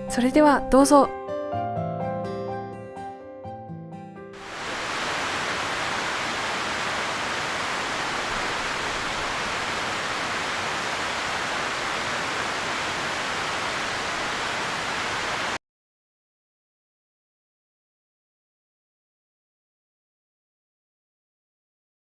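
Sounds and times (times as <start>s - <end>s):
steady rushing noise: 4.4s - 15.6s.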